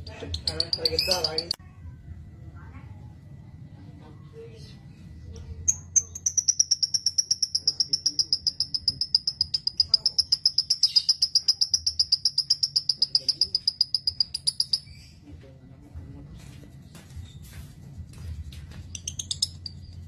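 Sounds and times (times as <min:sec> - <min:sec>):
bird trilling: 0:00.4 - 0:01.6, 0:05.6 - 0:15.2.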